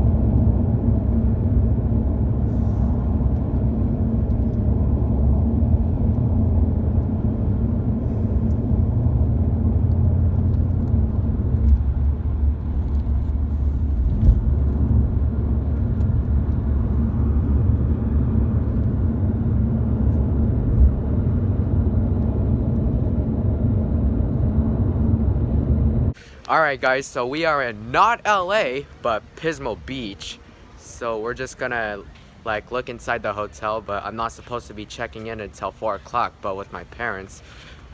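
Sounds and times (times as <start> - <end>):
car cabin road rumble: 0.0 - 26.2.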